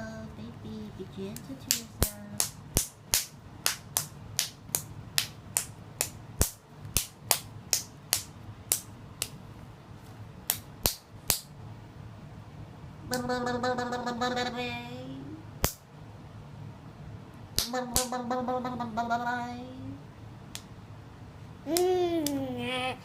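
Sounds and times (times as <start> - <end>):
baby's rhythmic smacks: 1.1 - 9.4, 10.4 - 11.6, 15.6 - 15.9, 17.5 - 18.5, 21.7 - 23.0.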